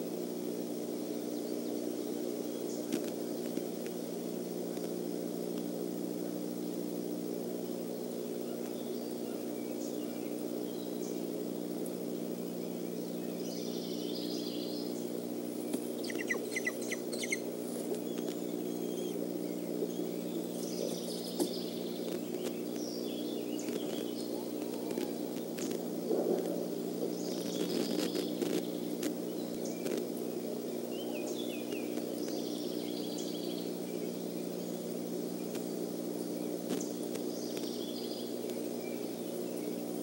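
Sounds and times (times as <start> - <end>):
steady low hum: 0.0 - 40.0
bird chirps: 12.5 - 25.8, 27.1 - 35.6.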